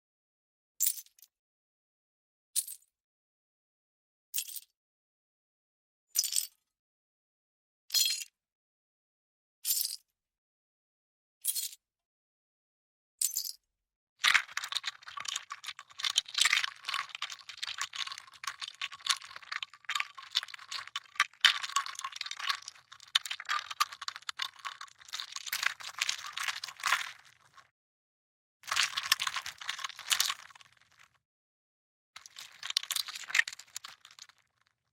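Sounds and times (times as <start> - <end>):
sharp cracks and crunches: 14.2 - 27.7, 28.6 - 31.1, 32.2 - 34.5.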